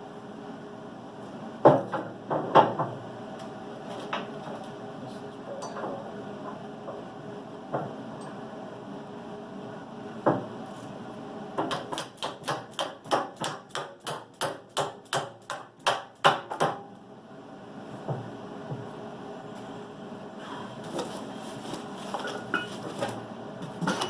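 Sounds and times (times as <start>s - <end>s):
hammer striking steel: 11.6s - 16.9s.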